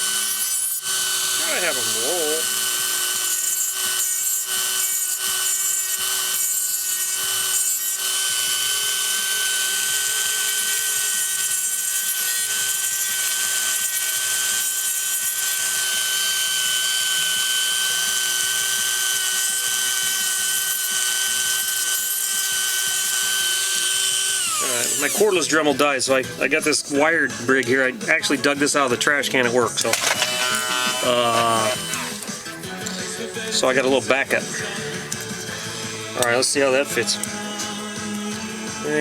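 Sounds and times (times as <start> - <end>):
rotary tool grinding: 0.0 - 25.8, 29.0 - 38.7.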